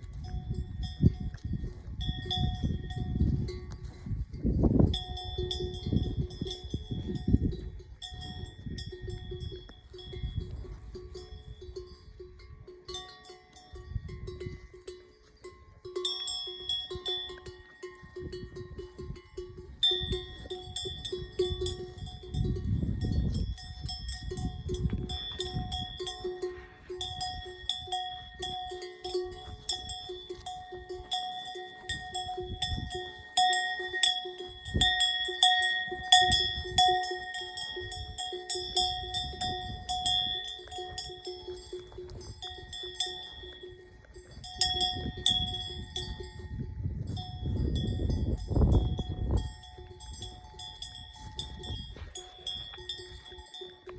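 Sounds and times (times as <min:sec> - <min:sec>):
cowbells clanking: 0:00.0 - 0:53.9.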